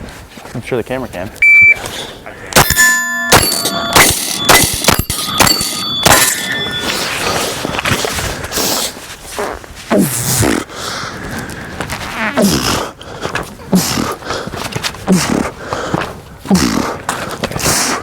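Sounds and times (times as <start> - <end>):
steel targets ringing: 2.6 - 8.0.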